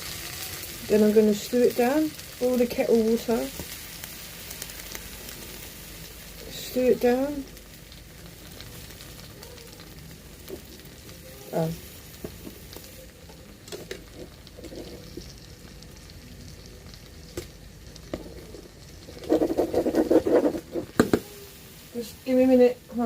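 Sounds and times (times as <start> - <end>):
chicken frying in a pot: 0.0 - 23.0
voice: 0.8 - 3.6, 6.4 - 7.5, 11.1 - 11.8, 21.1 - 23.0.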